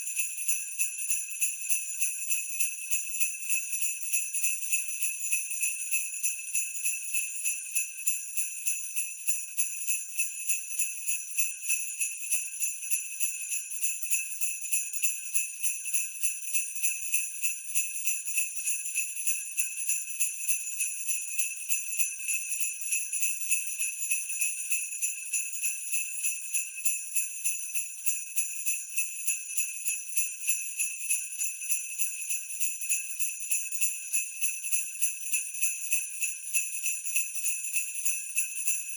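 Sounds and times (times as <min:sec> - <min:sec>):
sleigh bells jingling: 0:18.6 - 0:38.9.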